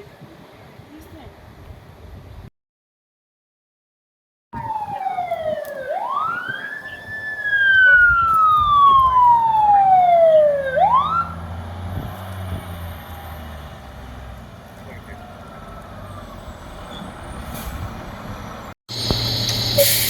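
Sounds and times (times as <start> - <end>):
fire engine siren wailing: 4.6 - 12.5, 14.9 - 17.4
truck engine rumbling: 9.8 - 20.0.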